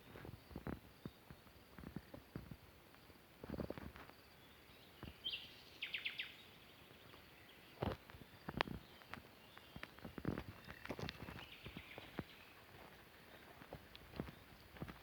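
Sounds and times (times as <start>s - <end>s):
bird chirping: 4.2s - 13.6s
footsteps on hard ground: 7.8s - 15.0s.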